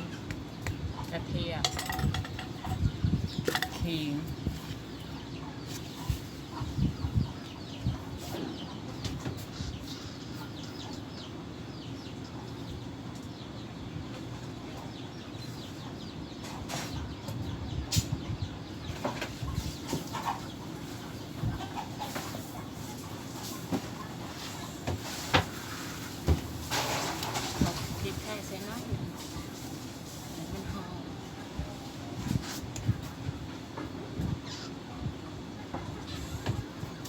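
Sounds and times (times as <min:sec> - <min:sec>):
chickens clucking: 0:00.0 - 0:37.0
knocks and rustles: 0:01.6 - 0:04.8, 0:23.4 - 0:29.6.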